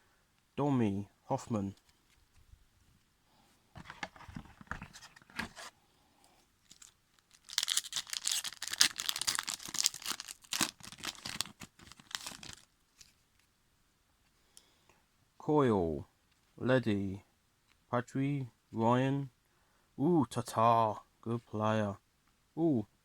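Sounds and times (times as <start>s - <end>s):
wrapper rustling and crinkling: 6.6s - 13.3s.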